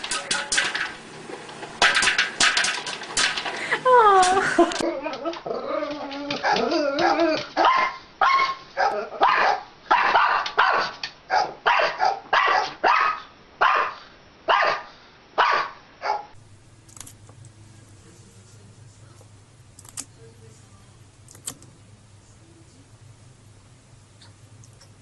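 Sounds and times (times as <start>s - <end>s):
dog barking: 6.4s - 16.4s
faint low hum: 16.4s - 25.0s.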